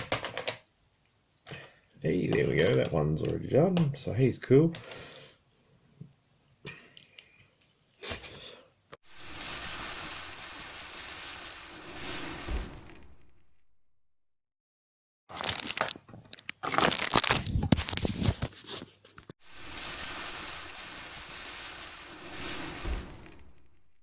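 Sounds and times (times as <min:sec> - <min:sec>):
steady hiss: 0:09.1 - 0:13.8, 0:19.4 - 0:24.0.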